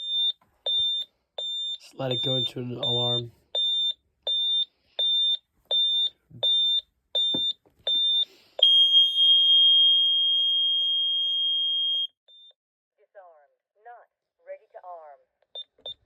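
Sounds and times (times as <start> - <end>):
continuous high-pitched alarm tone: 0.0 - 12.1
alarm keypad beeping: 0.0 - 12.5.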